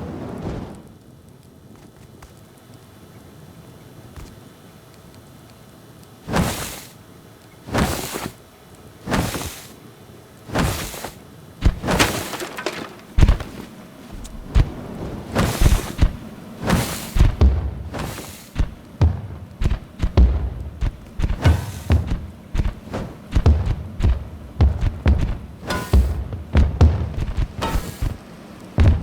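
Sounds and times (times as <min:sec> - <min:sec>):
fireworks bangs with crackling: 0:10.5 - 0:29.0.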